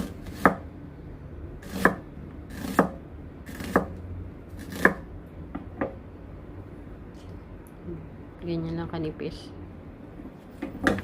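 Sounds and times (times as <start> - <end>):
knife slicing onion on board: 0.0 - 0.7, 1.6 - 4.0, 4.6 - 5.1.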